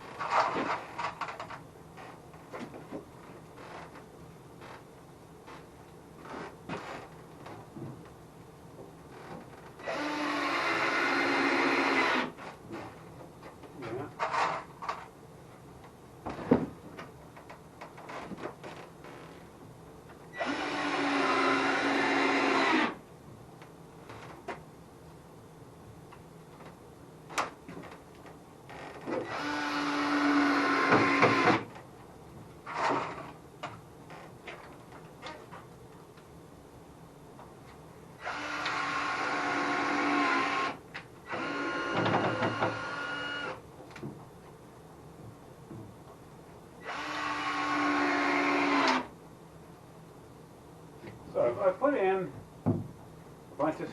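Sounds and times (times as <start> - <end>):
power drill driving screw into wood: 9.8 - 12.4, 20.4 - 23.0, 29.1 - 31.7, 38.2 - 43.6, 46.8 - 49.1.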